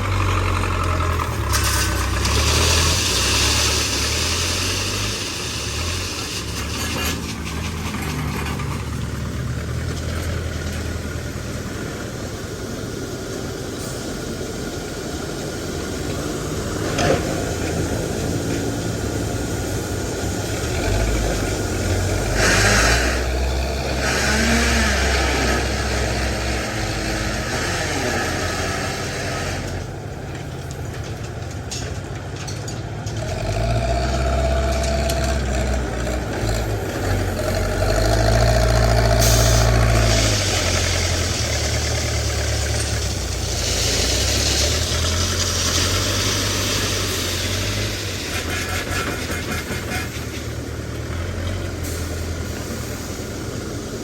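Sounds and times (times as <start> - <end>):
diesel engine revving: 0.0 - 54.0
hiss bursts: 1.3 - 7.7, 39.0 - 51.0, 51.7 - 54.0.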